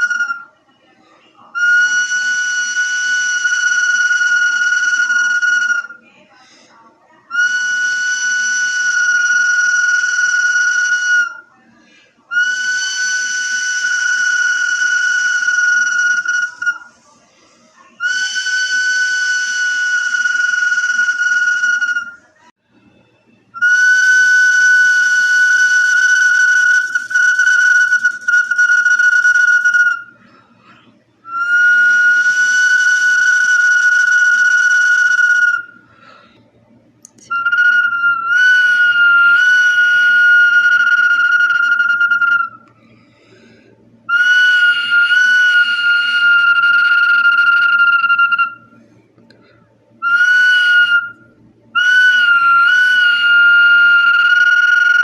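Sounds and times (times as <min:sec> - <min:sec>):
whistle bottle notes: 0:00.0 - 0:00.6, 0:01.5 - 0:06.0, 0:07.3 - 0:11.5, 0:12.3 - 0:17.0, 0:18.0 - 0:22.3, 0:23.5 - 0:30.3, 0:31.2 - 0:35.8, 0:37.1 - 0:42.7, 0:44.1 - 0:48.8, 0:50.0 - 0:55.0.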